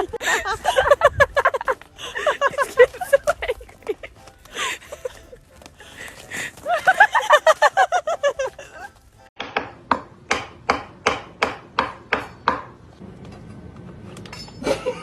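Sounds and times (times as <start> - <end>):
sharp ringing knocks: 9.4 - 12.8.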